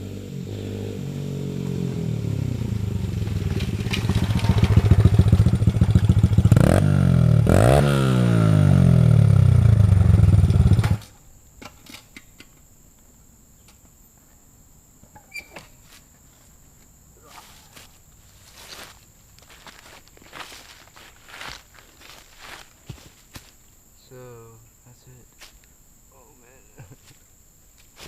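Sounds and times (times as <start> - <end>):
dirt bike engine revving: 0.0 - 11.0.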